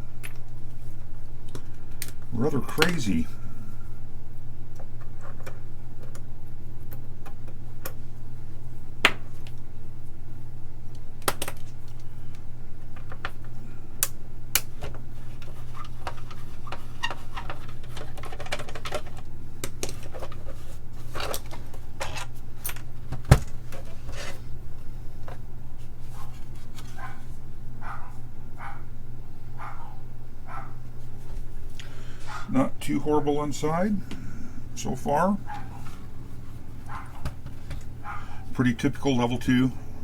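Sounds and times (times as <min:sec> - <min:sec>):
steady low hum: 0:00.0 - 0:40.0
plastic case parts clicking: 0:16.0 - 0:20.4.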